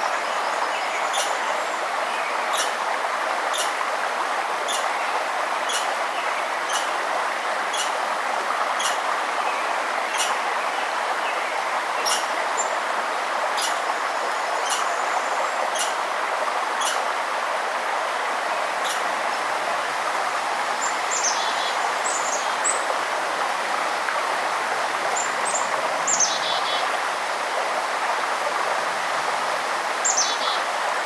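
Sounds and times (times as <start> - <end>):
river rushing: 0.0 - 31.0
bird chip call: 4.7 - 4.9, 5.7 - 5.9, 6.7 - 6.9.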